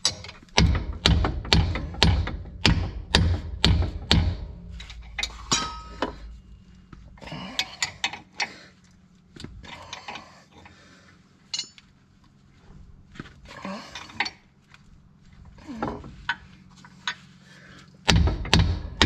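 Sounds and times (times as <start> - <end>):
metal tools clinking: 4.8 - 8.5, 11.4 - 12.0.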